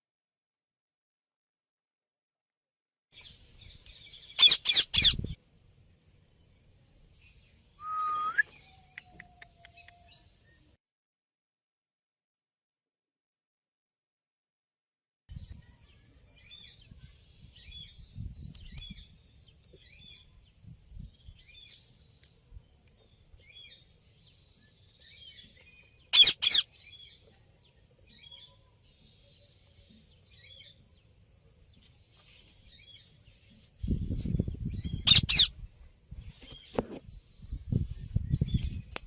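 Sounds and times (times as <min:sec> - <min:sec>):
parrots chirping: 0:04.2 - 0:05.2, 0:26.1 - 0:26.7, 0:35.1 - 0:35.5
parrot harsh screeches: 0:04.4 - 0:05.2, 0:26.1 - 0:26.6, 0:35.1 - 0:35.5.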